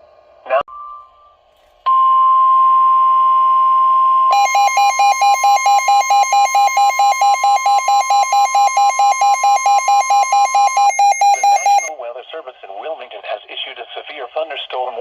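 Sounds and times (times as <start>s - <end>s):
steady high alarm tone: 0.8s - 11.9s
electronic alarm beeping rapidly: 4.3s - 11.9s.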